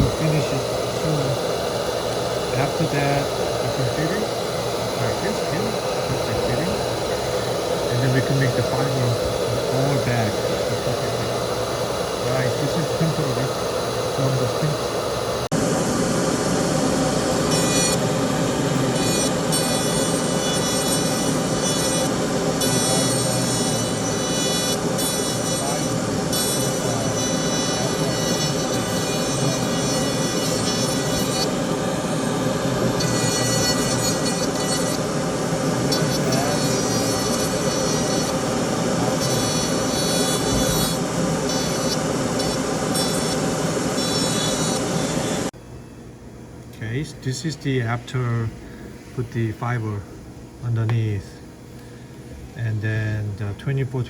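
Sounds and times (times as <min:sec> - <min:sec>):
machinery rushing noise: 0:00.0 - 0:19.6
machine hissing: 0:00.0 - 0:45.6
high whine: 0:00.0 - 0:54.0.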